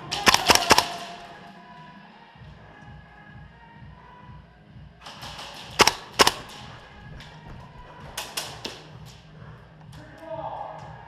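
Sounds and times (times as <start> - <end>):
airsoft gun shots: 0.2 - 1.2, 5.7 - 8.8.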